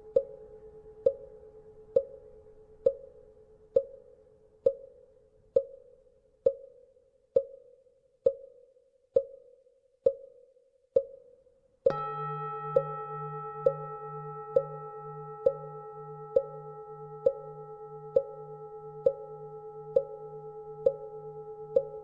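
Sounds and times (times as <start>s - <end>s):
temple bell hum: 11.9s - 22.0s.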